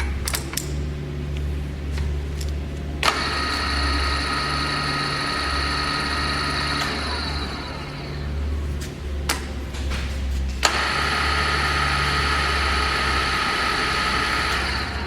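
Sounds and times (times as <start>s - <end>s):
low hum: 0.0s - 15.0s
drill spindle whine: 3.0s - 8.6s, 10.6s - 15.0s.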